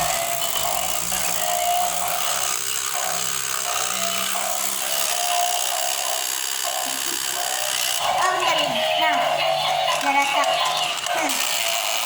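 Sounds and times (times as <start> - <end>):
tinny electronic toy tune: 0.0 - 12.0
toy motor whirring: 0.0 - 12.0.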